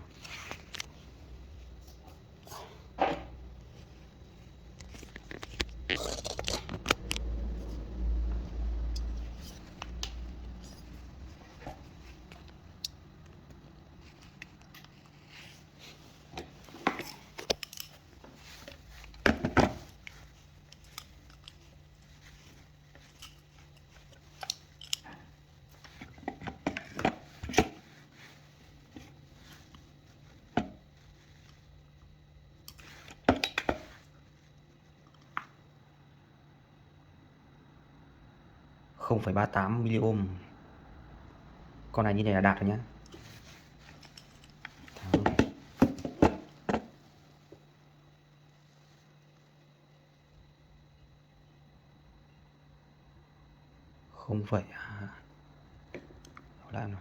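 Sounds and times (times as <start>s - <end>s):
faint steady hum: 0.0s - 57.0s
small parts clicking and tapping: 16.3s - 27.8s, 32.6s - 34.0s.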